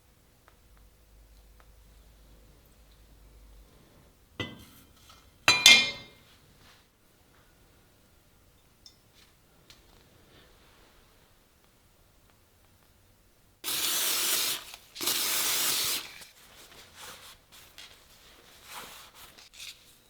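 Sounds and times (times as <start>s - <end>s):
aerosol can spraying: 13.6s - 16.2s.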